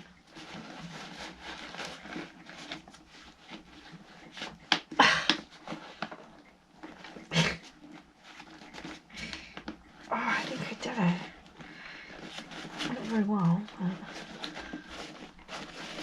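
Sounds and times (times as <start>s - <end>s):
vacuum bag rustling: 8.3s - 16.0s.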